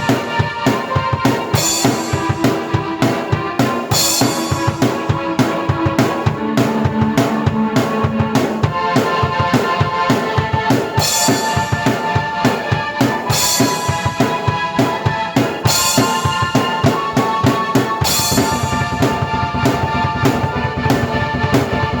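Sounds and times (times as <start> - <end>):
drum kit beat: 0.0 - 22.0
keyboard chords and melody: 0.0 - 22.0
cymbal crashes: 1.6 - 7.2, 13.2 - 22.0.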